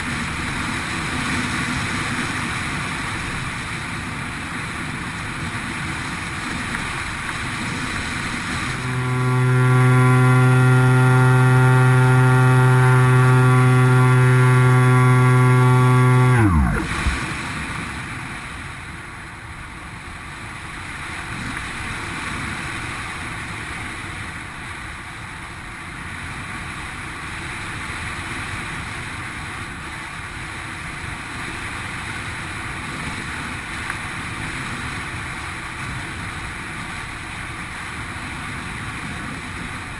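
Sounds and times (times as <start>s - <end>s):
wind on microphone: 0.0s - 18.6s
electric motor and propeller: 6.4s - 18.2s.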